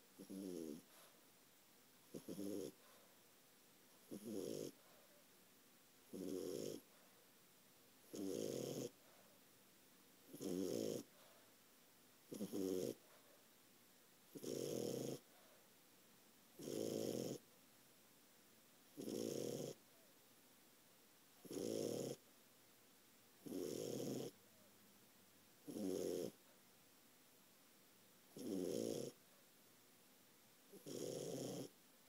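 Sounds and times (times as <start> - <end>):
puppy snoring: 0.2 - 1.2, 2.1 - 3.1, 4.0 - 5.2, 6.1 - 7.0, 8.0 - 9.3, 10.3 - 11.4, 12.3 - 13.3, 14.3 - 15.6, 16.5 - 17.5, 18.9 - 19.8, 21.4 - 22.2, 23.4 - 24.4, 25.6 - 26.5, 28.3 - 29.2, 30.7 - 31.8.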